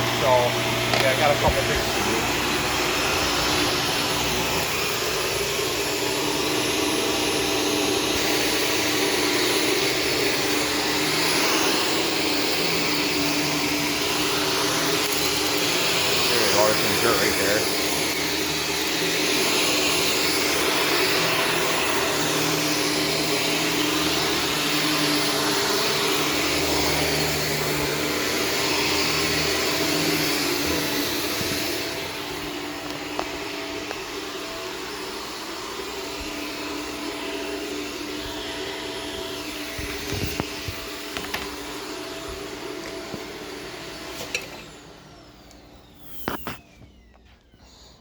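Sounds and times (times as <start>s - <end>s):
vacuum cleaner whining: 0.0s - 48.0s.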